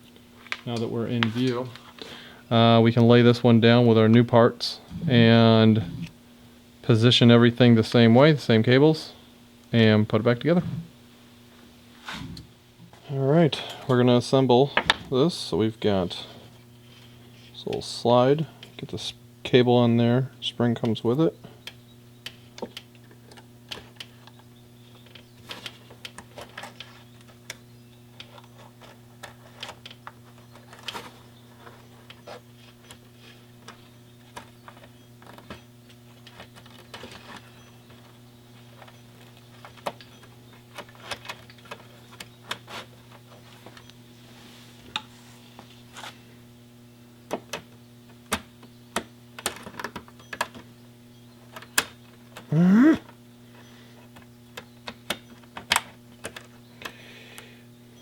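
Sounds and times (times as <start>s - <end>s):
steady low hum: 0.0s - 58.0s
small parts clicking and tapping: 21.6s - 44.0s, 47.3s - 50.7s, 54.1s - 57.5s.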